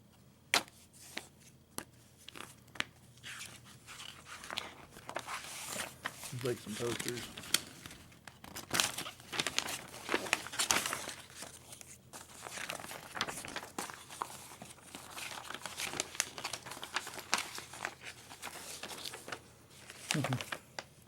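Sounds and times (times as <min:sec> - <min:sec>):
paper crinkling and rustling: 0:00.6 - 0:21.0.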